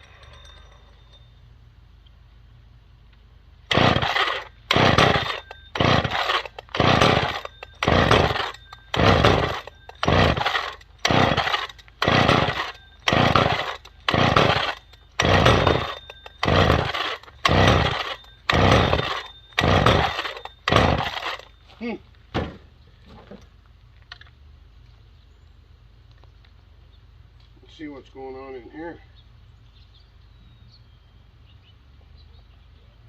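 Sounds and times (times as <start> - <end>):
chainsaw pull-start cranking: 0.0 - 1.2, 3.7 - 21.5.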